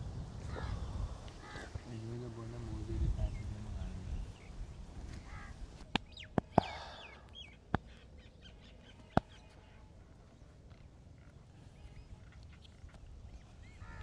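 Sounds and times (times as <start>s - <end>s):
birds chirping: 0.0s - 14.0s
sharp joint cracks: 5.8s - 6.8s.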